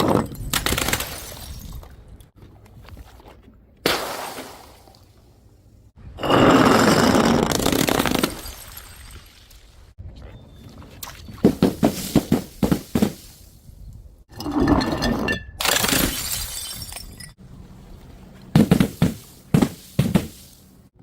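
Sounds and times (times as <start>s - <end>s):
container bursting: 18.6s - 20.8s.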